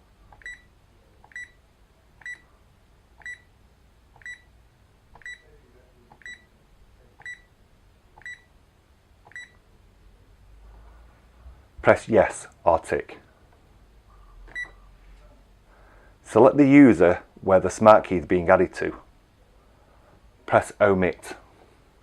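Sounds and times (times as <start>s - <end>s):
keypad beeps: 0.3s - 1.6s, 2.2s - 2.5s, 3.2s - 3.5s, 4.2s - 4.5s, 5.2s - 5.5s, 6.1s - 6.5s, 7.2s - 7.5s, 8.2s - 8.5s, 9.3s - 9.6s, 14.5s - 14.8s.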